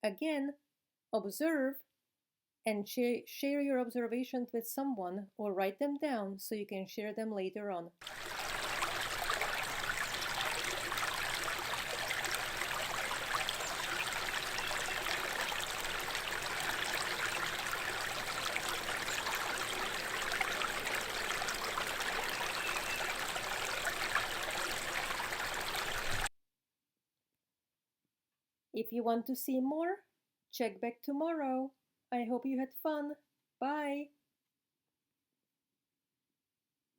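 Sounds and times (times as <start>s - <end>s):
stream water babbling: 8.0s - 26.3s.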